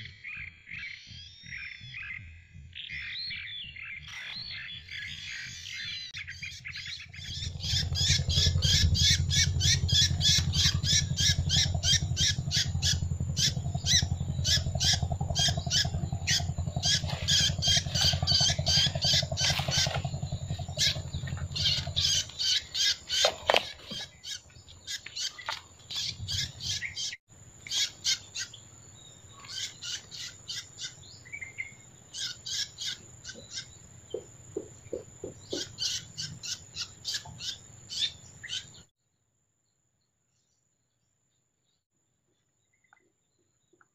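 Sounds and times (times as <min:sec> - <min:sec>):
low rumble: 0:01.2 - 0:23.6
bird calling sharp notes: 0:04.0 - 0:28.7, 0:29.3 - 0:38.8.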